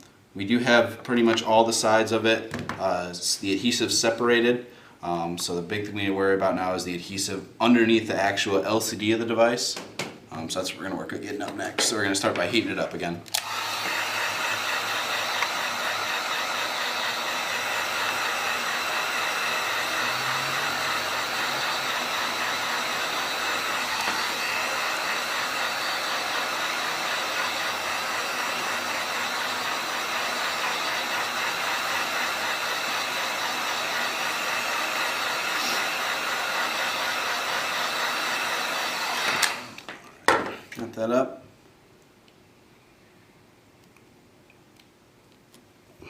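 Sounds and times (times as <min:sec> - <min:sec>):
heat gun blowing hot air: 0:13.3 - 0:39.9.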